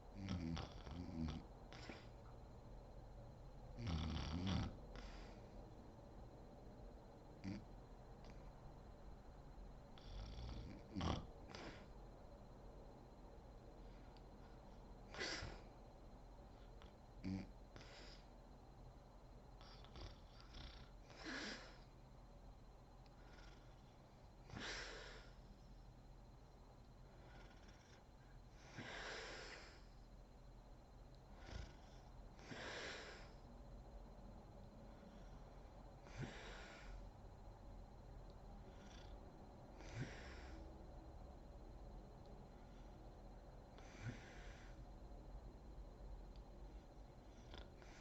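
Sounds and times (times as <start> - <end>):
woman breathing while sleeping: 0.0 - 2.5, 4.3 - 5.9, 9.8 - 12.5, 13.7 - 18.4, 19.6 - 22.0, 23.0 - 25.8, 26.9 - 30.2, 31.1 - 33.6, 34.6 - 37.4, 38.3 - 41.0, 42.4 - 45.1, 46.3 - 48.0
woman snoring: 0.2 - 2.1, 3.8 - 5.4, 10.0 - 11.9, 19.6 - 21.9, 24.5 - 25.4, 28.6 - 30.0, 31.3 - 33.4, 36.0 - 37.0, 38.6 - 40.6, 43.7 - 44.8.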